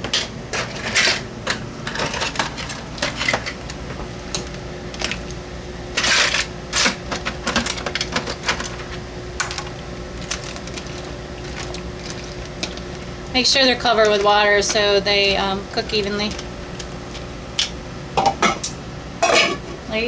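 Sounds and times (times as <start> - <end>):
steady hum: 0.0 - 20.0
crabs clattering against metal pot: 5.9 - 19.9.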